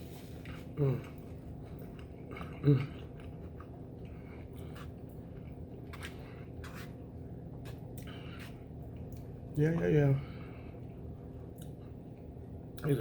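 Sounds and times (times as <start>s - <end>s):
person chewing food: 0.1s - 12.9s
person humming: 0.8s - 1.1s.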